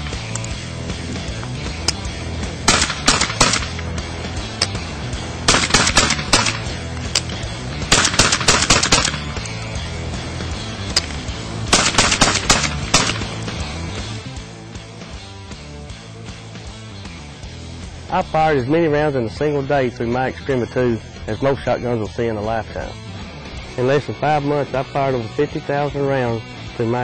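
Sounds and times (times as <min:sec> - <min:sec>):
background music: 0:00.0 - 0:27.0
shotgun shots: 0:02.6 - 0:04.0, 0:05.5 - 0:06.8, 0:07.9 - 0:09.4, 0:11.7 - 0:13.4.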